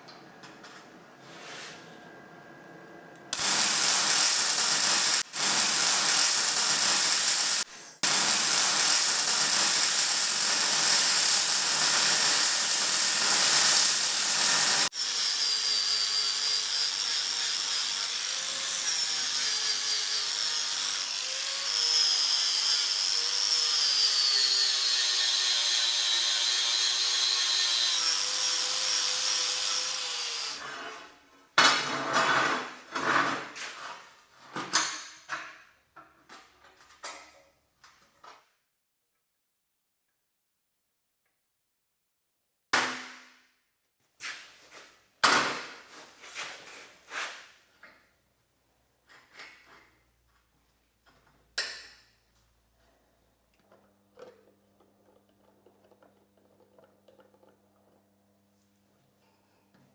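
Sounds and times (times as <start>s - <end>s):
running motor: 3.4s - 14.9s
power tool cutting metal: 3.4s - 30.6s.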